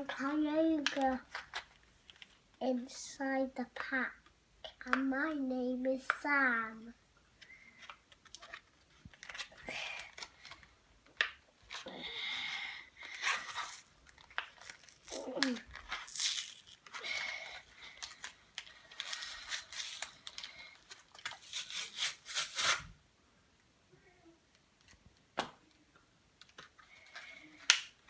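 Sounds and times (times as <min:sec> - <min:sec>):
plastic packaging crinkling and tearing: 0:08.2 - 0:10.7, 0:11.7 - 0:22.9.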